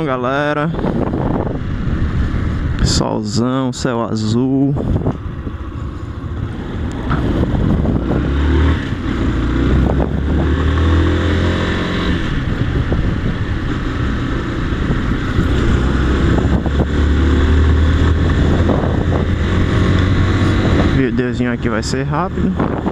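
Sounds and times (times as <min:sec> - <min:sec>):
motorcycle engine running: 0:00.0 - 0:22.9
wind rushing over microphone: 0:00.0 - 0:22.9.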